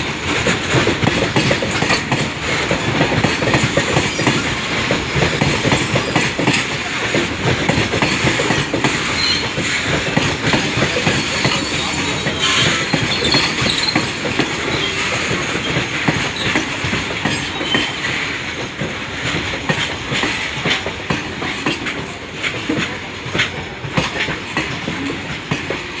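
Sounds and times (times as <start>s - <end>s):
train wheels clattering over rail joints: 0.0s - 26.0s
train wheel squeal: 3.2s - 7.0s, 8.0s - 18.7s.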